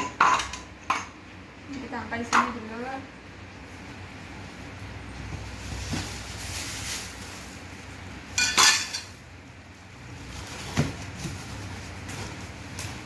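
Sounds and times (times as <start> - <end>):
metal parts clinking and clattering: 8.4 - 9.1.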